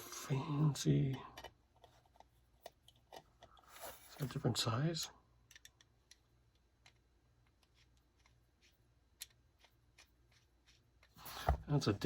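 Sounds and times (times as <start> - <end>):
small screws clicking and tapping: 5.4 - 8.4.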